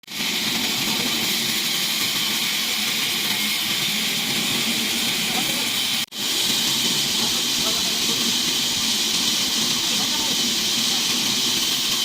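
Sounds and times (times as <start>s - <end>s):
power saw cutting wood: 0.0s - 12.0s.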